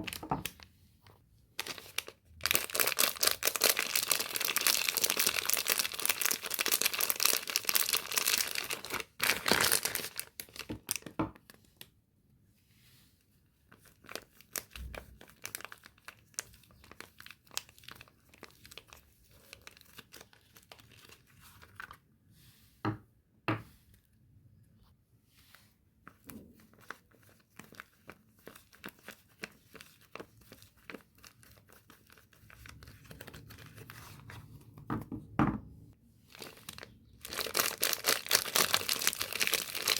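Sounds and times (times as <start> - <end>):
packaging tearing and crinkling: 1.6 - 11.1, 36.3 - 39.9.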